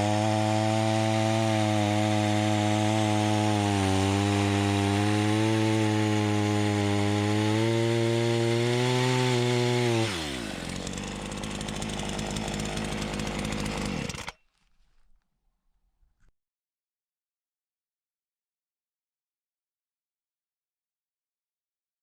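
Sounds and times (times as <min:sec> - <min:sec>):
chainsaw engine revving and idling: 0:00.0 - 0:14.4.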